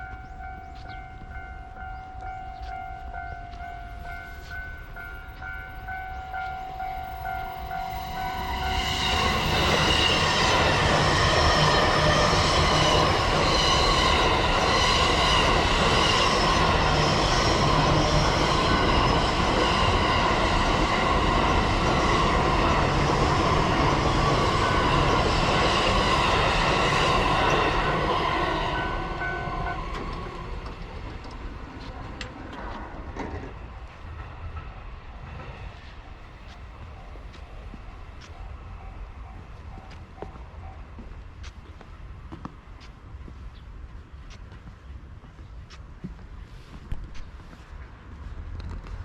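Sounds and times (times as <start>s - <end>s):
crossing two-tone warning signal: 0.0s - 33.9s
train passing: 0.0s - 49.0s.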